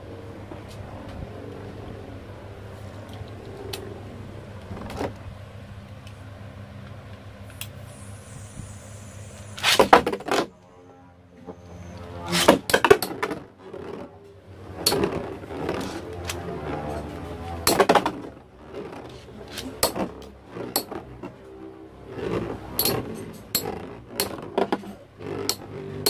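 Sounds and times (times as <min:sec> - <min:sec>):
spinning tops whirring: 0:07.4 - 0:10.5, 0:11.7 - 0:26.0.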